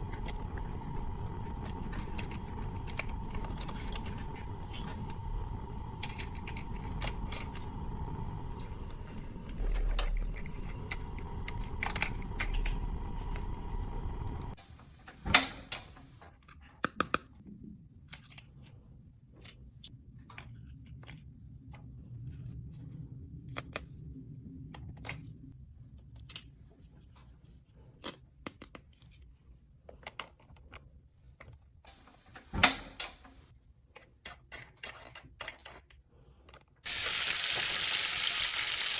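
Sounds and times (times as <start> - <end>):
steady hum with high tone: 0.0 - 16.2.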